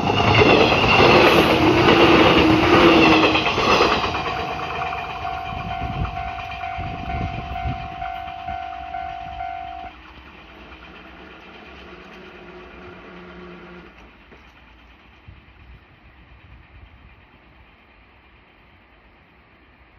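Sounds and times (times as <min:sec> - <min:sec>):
passing train rumble: 0:00.0 - 0:19.9
level crossing bell ringing: 0:04.0 - 0:09.9.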